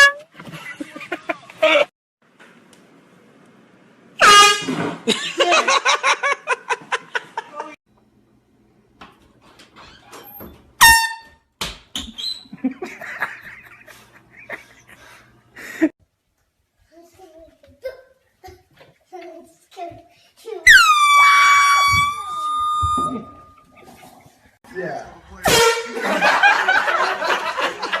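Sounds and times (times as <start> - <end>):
air horn blasting: 0.0 - 0.3, 4.2 - 4.8, 10.8 - 11.4, 25.4 - 26.1.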